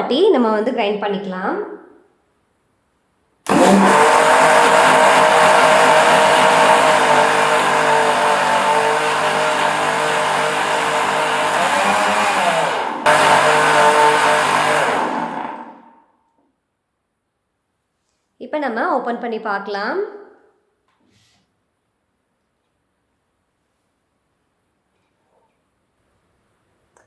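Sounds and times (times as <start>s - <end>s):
mixer grinder running: 3.5s - 15.9s.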